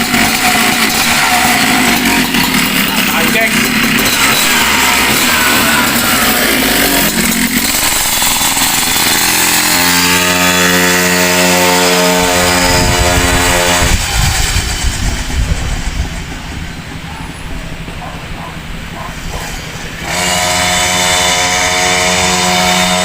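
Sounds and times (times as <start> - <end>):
two-stroke scooter engine revving: 0.0 - 23.0.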